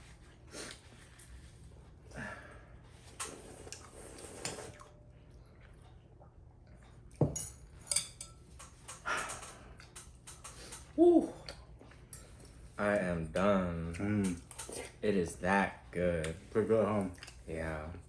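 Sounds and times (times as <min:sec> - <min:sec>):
slurping: 0:03.1 - 0:04.9
utensils clinking against a bowl: 0:07.2 - 0:15.0.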